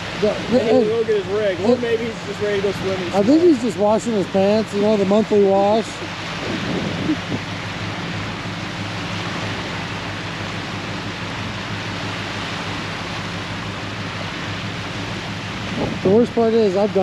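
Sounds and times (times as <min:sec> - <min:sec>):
rain and wind on microphone: 0:00.0 - 0:17.0.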